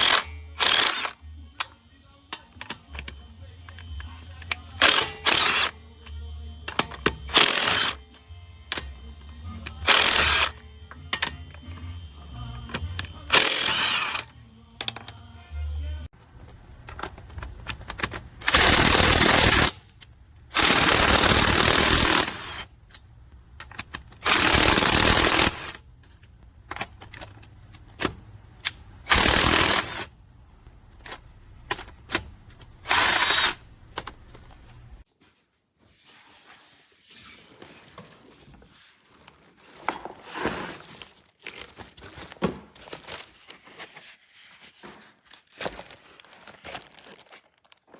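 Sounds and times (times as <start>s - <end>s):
impact wrench hammering: 9.8s - 10.6s, 12.7s - 15.0s, 16.8s - 19.8s, 20.5s - 22.7s, 23.6s - 25.8s, 29.0s - 30.1s, 31.7s - 34.7s.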